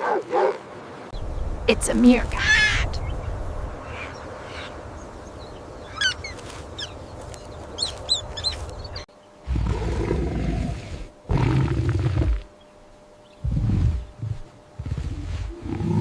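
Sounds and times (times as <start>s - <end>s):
background hiss: 0.0s - 16.0s
low rumbling animal sounds: 9.4s - 12.5s, 13.3s - 16.0s.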